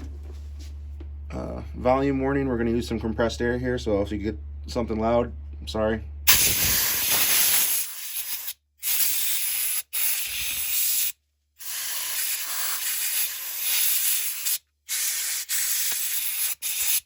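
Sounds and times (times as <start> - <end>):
compressed air hissing bursts: 6.3 - 17.0.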